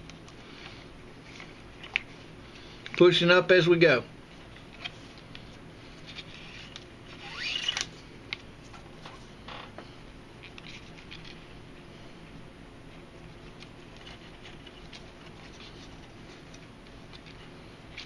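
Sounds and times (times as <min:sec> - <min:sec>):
squeaky cord scrape: 0:06.2 - 0:07.9
cord rustling and ticking: 0:13.2 - 0:18.0.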